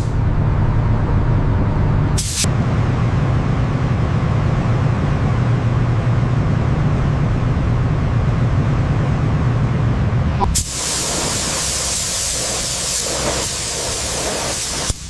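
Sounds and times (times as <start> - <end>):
machine running hum: 0.0 - 11.7
sharp burst: 10.4 - 15.0.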